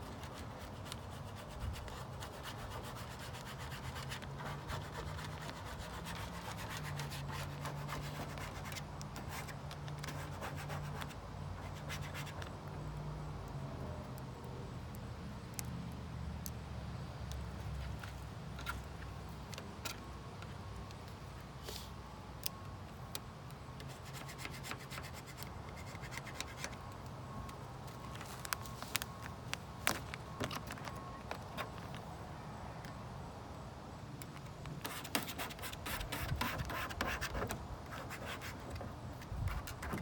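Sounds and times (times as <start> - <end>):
rubbing and scratching on decal: 0.0 - 12.6, 23.8 - 27.0, 34.8 - 40.0
light ticks and crackles: 11.9 - 21.2, 25.3 - 32.1.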